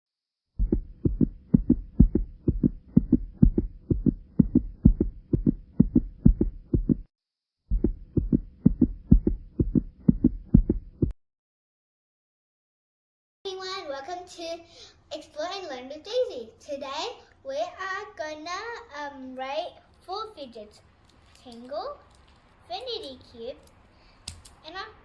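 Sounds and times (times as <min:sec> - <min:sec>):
heartbeat-like double thumps: 0:00.6 - 0:07.1, 0:07.7 - 0:11.2.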